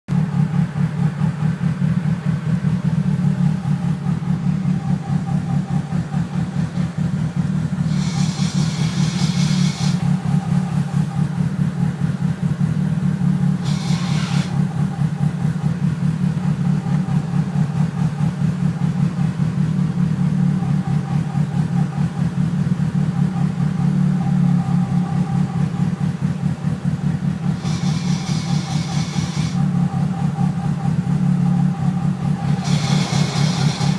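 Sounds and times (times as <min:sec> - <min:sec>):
car engine fluttering noise: 0:00.1 - 0:33.9
steady whine: 0:00.1 - 0:33.9
short high hissing: 0:07.9 - 0:10.2, 0:13.6 - 0:14.6, 0:27.6 - 0:29.6, 0:32.5 - 0:33.9.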